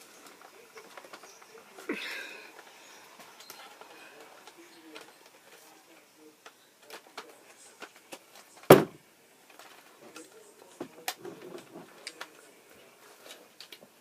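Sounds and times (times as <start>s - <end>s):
loud thump: 8.7s - 9.0s.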